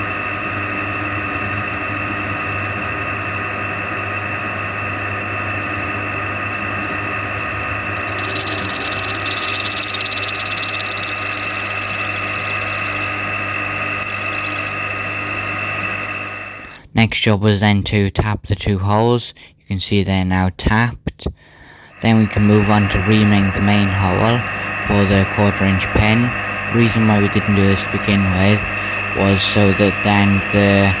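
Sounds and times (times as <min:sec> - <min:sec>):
machine tool motor humming: 0:00.0 - 0:16.8, 0:21.9 - 0:31.0
high hiss: 0:21.8 - 0:31.0.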